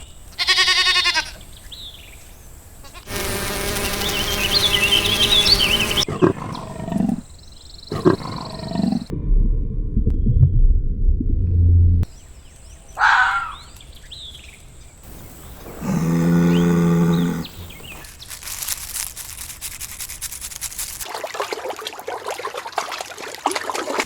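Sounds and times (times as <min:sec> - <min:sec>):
animal long low call: 0:15.6 - 0:18.0
scratchy clattering: 0:18.0 - 0:21.1.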